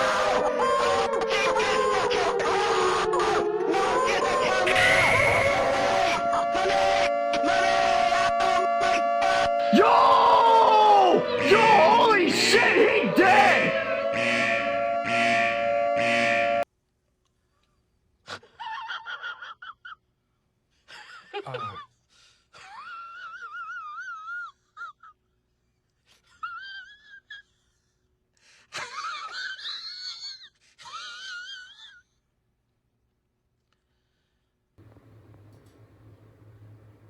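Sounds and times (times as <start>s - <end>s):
high-pitched wailing voice: 0.0s - 13.9s.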